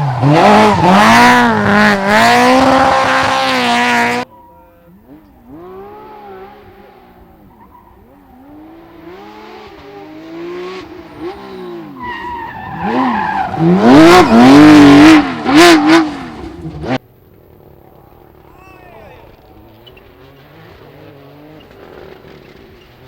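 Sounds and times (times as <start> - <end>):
distant rally car engine revving: 0.0 - 23.0
rally car engine running hard: 0.0 - 23.0.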